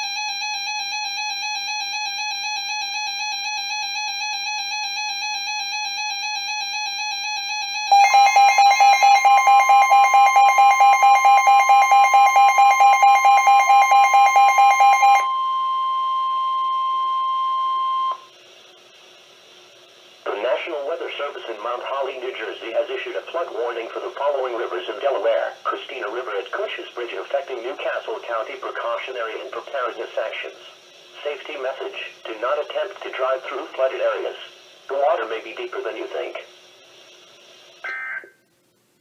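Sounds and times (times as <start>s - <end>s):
warbling electronic alarm: 0.0s - 18.3s
steady warning alert tone: 7.7s - 18.2s
faint radio hiss: 18.3s - 39.0s.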